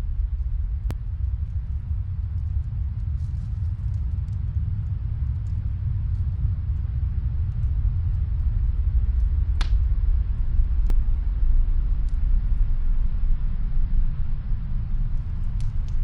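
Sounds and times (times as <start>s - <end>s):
fireplace crackling and popping: 0.0s - 11.2s, 15.0s - 16.0s
snowstorm wind rumbling: 0.0s - 16.0s.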